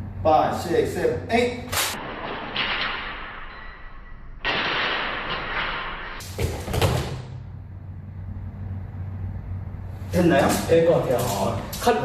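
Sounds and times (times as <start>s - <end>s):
feet landing on floor: 6.2s - 7.4s.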